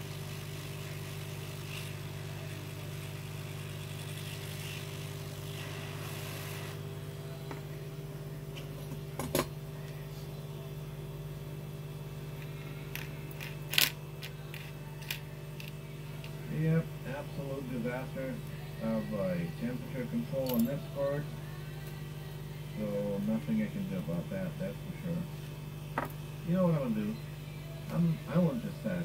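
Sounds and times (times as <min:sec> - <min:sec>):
computer fans humming: 0:00.0 - 0:29.0.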